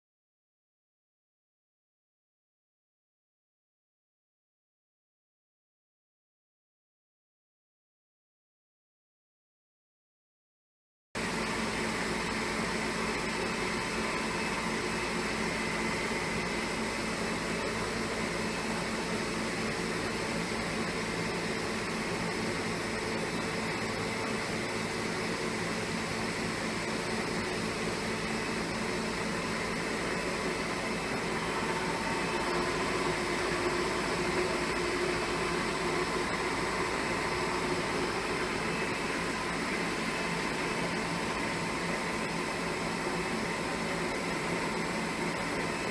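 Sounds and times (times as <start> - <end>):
milling machine humming: 11.2 - 45.9.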